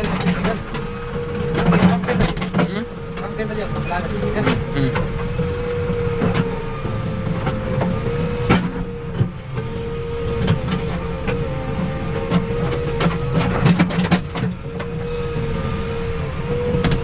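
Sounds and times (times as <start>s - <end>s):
clanks and knocks: 0.0s - 9.4s, 12.2s - 15.0s, 16.6s - 17.0s
diesel engine rumbling with whine: 0.0s - 17.0s.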